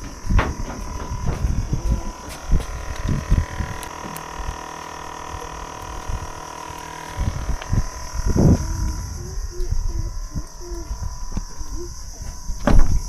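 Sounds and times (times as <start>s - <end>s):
low thuds and rumbling: 0.0s - 4.6s
high-pitched insect drone: 0.0s - 13.0s.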